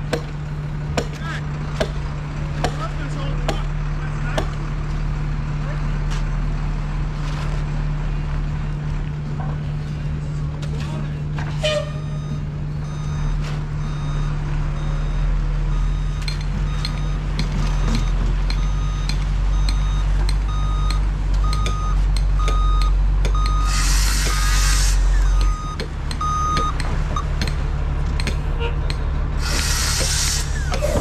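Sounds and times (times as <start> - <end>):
truck engine running: 0.0 - 31.0
reversing alarm beeping: 11.6 - 27.5
air brake hiss: 23.6 - 25.2, 29.4 - 31.0.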